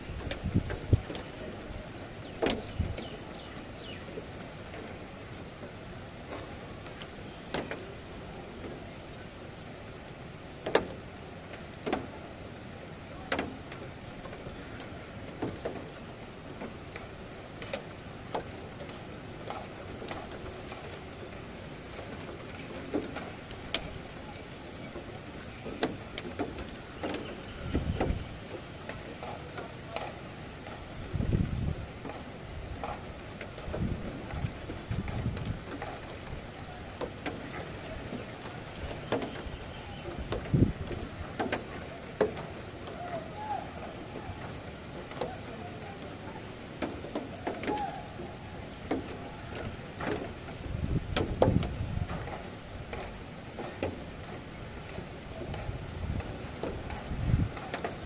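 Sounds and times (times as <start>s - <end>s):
wind gusts on microphone: 0.0s - 4.0s, 26.7s - 28.5s, 30.5s - 36.9s, 37.8s - 42.0s, 47.8s - 53.4s, 54.1s - 58.0s
raindrops ticking: 0.0s - 58.0s
steady rain wash: 0.0s - 58.0s
sharp knocks and clicks: 48.8s - 57.0s.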